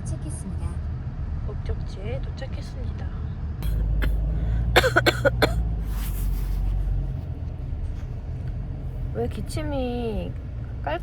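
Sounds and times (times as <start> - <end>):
car engine rumble: 0.0 - 11.0
person coughing: 3.6 - 4.2, 4.8 - 5.6.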